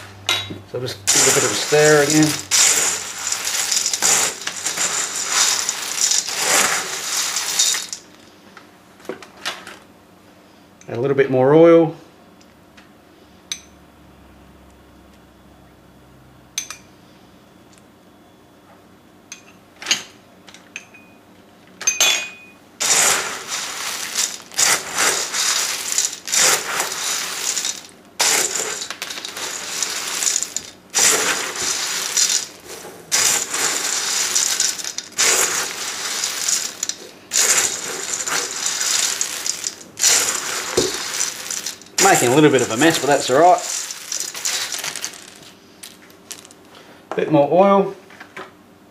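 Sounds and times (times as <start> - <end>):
spoon stirring dry cereal: 1.1 - 8.2, 22.8 - 45.4.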